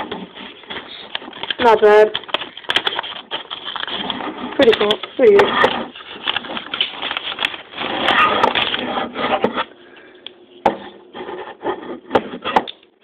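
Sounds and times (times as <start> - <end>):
paper rustling and rubbing: 0.0 - 9.7.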